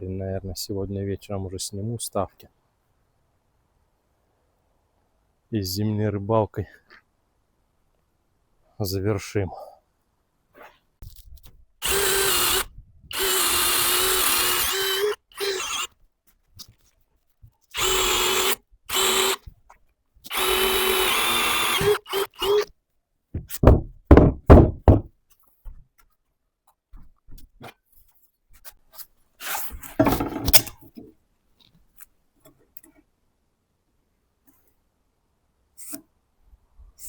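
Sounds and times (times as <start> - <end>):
cordless drill running: 11.8 - 15.9, 17.8 - 19.4, 20.3 - 22.6
loud knocks: 23.4 - 25.1.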